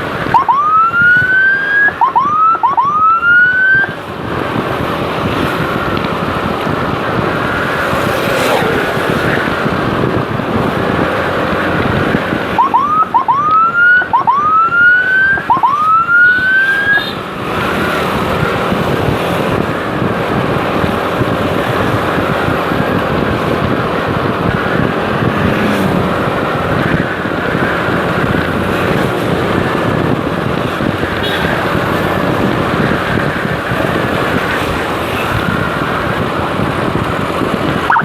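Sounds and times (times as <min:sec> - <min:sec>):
motorcycle riding at speed: 0:00.0 - 0:38.0
wind rushing: 0:00.0 - 0:38.0
motorcycle siren whoops: 0:00.2 - 0:04.0, 0:12.5 - 0:19.7, 0:37.8 - 0:38.0.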